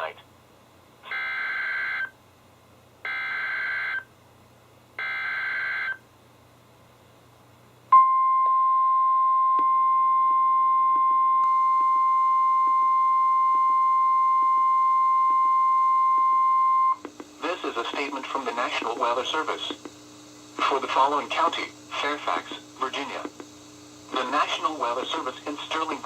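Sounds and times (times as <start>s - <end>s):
loud steady alarm tone: 1.1s - 2.1s, 3.1s - 4.1s, 5.0s - 6.0s.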